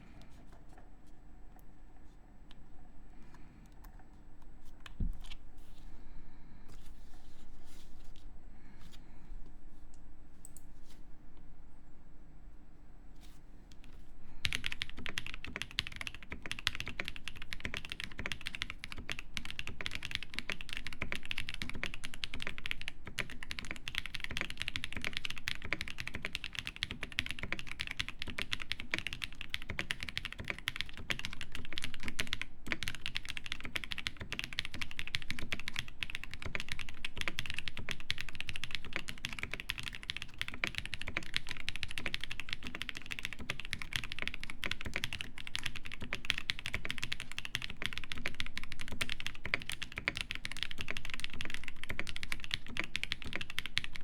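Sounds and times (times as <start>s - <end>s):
mechanical keyboard typing clacks: 14.4s - 54.0s.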